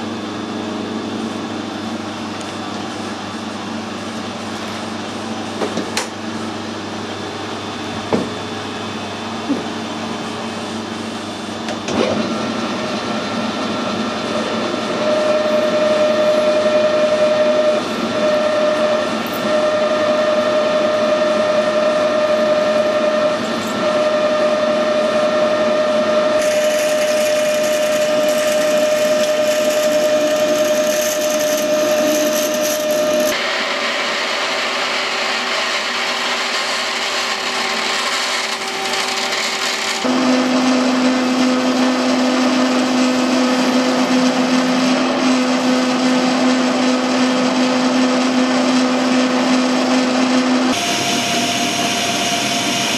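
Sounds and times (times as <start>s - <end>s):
metal lathe whining: 12.2s - 52.9s
metal cutting hiss: 26.4s - 33.4s.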